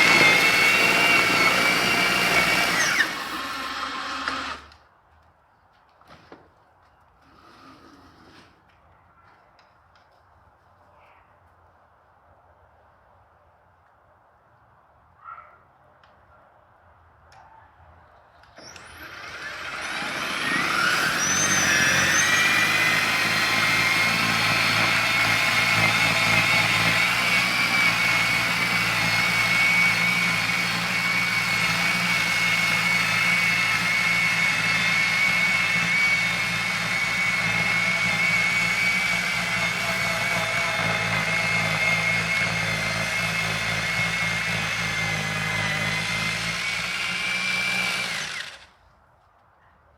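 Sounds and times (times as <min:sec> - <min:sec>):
snow blower motor whine: 0:00.0 - 0:04.8, 0:18.6 - 0:48.8.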